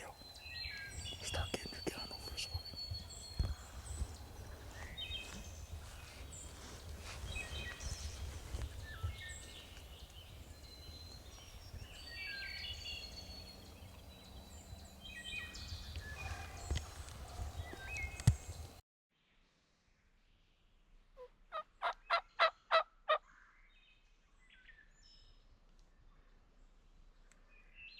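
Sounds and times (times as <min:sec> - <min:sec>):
songbirds chirping and whistling: 0:00.0 - 0:18.8.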